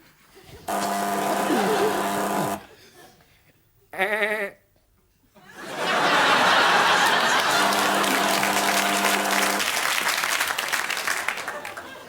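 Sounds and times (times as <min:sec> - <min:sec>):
studio audience laughing: 0:00.5 - 0:03.2, 0:05.4 - 0:12.0.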